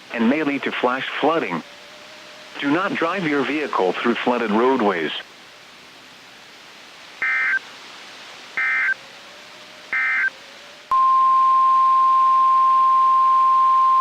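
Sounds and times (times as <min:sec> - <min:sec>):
steady warning alarm tone: 0:08.6 - 0:09.0, 0:10.0 - 0:10.3.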